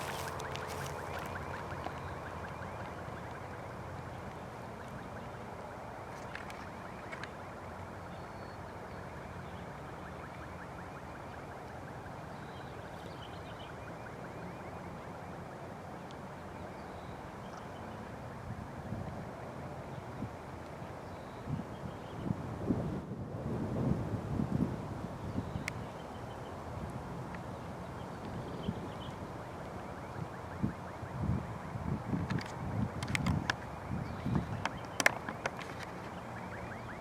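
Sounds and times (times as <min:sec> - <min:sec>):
siren winding down: 0:00.0 - 0:05.6, 0:33.6 - 0:37.0.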